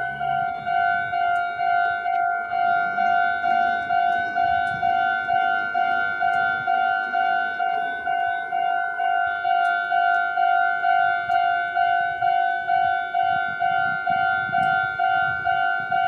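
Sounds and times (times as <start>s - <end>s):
level crossing warning bell: 0.0s - 16.0s.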